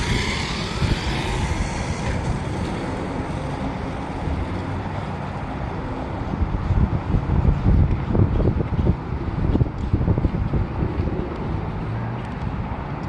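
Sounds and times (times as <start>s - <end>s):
electric motor whine: 0.0s - 4.4s
steady low rumble: 0.0s - 13.0s.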